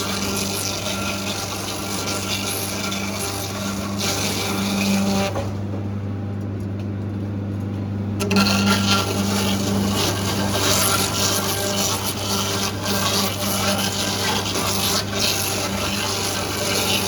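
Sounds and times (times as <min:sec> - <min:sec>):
machinery humming: 0:00.0 - 0:17.0
rough scraping noise: 0:08.2 - 0:17.0.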